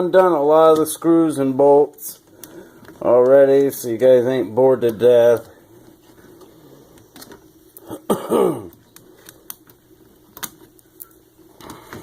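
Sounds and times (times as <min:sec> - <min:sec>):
person clearing throat: 0:07.8 - 0:08.8.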